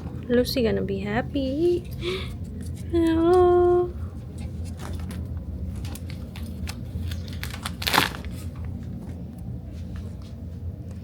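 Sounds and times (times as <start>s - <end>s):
package crinkling: 4.8s - 8.7s
package tearing: 6.0s - 8.4s.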